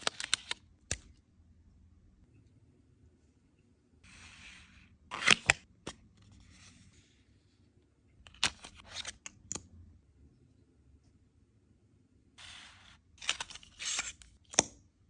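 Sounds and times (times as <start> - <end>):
packaging clicks and snaps: 0.0 - 1.1.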